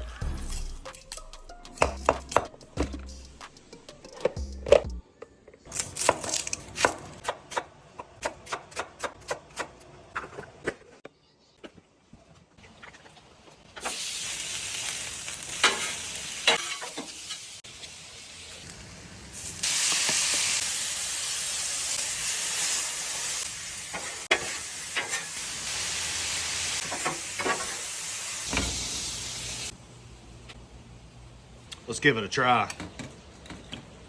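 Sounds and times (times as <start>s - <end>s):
food sizzling on a griddle: 13.8s - 29.7s.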